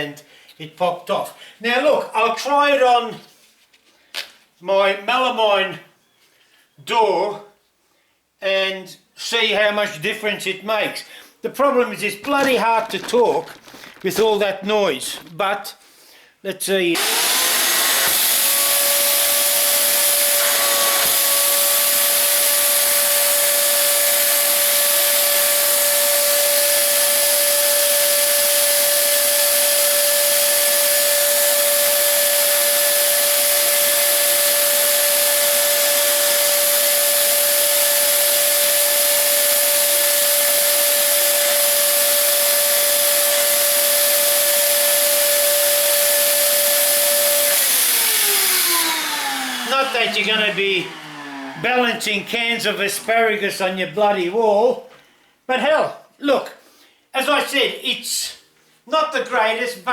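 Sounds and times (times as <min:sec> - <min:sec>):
shop vacuum whining: 0:17.0 - 0:53.6.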